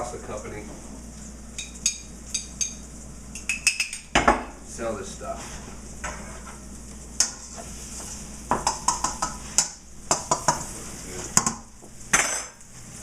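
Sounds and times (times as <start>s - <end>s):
utensils clinking against dishes: 1.6s - 4.1s, 11.3s - 12.6s.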